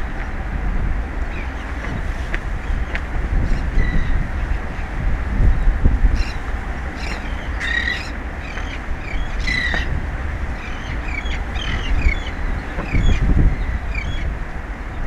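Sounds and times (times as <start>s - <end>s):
wind on microphone: 0.0s - 15.0s
birds calling: 1.2s - 14.3s
birds chattering: 6.1s - 14.3s.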